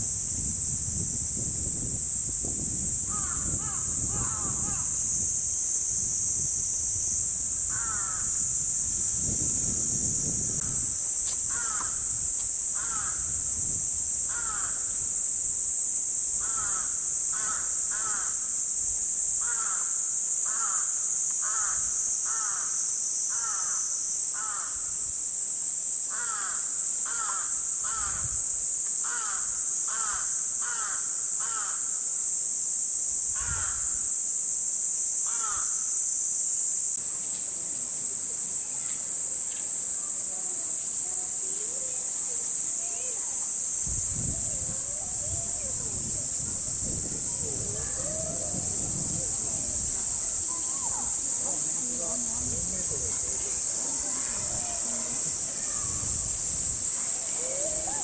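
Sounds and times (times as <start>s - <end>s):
cicadas droning: 0.0s - 58.0s
crow cawing: 3.1s - 5.0s, 7.7s - 8.4s, 11.5s - 12.0s, 12.8s - 13.3s, 14.3s - 14.9s, 16.4s - 18.4s, 26.1s - 28.2s, 29.0s - 31.9s, 35.3s - 35.7s.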